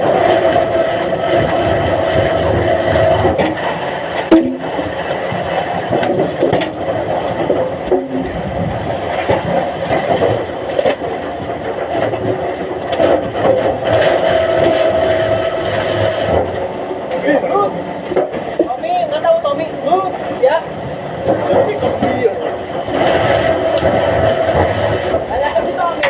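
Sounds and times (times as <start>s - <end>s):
machinery humming: 0.0s - 26.0s
sharp knocks: 4.3s - 4.8s.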